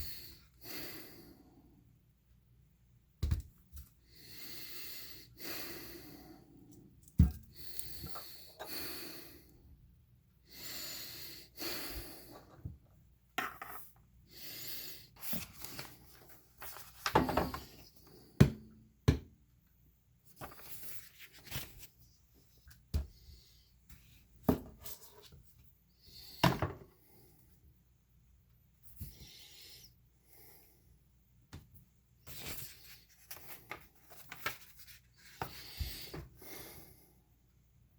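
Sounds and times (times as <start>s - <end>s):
heavy hissing breathing: 10.5s - 12.4s.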